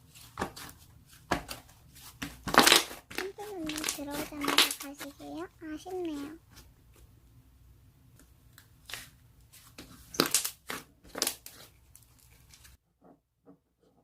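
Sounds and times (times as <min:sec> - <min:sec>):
crackling crunching bursts: 0:02.4 - 0:05.4, 0:10.1 - 0:11.5.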